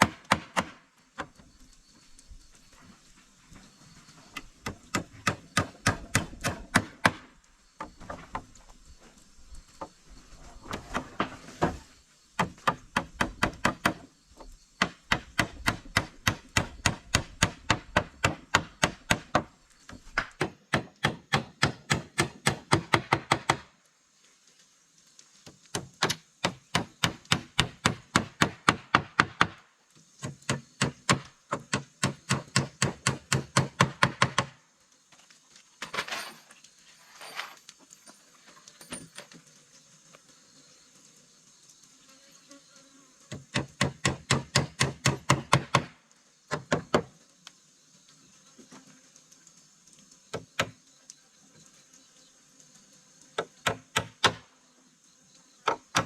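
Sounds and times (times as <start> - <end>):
hand tool striking wood: 0.0 - 1.4, 4.4 - 7.3, 12.4 - 14.1, 14.8 - 23.7, 25.7 - 29.6, 30.2 - 34.5, 43.3 - 45.9, 46.5 - 47.1, 53.4 - 54.4, 55.6 - 56.0.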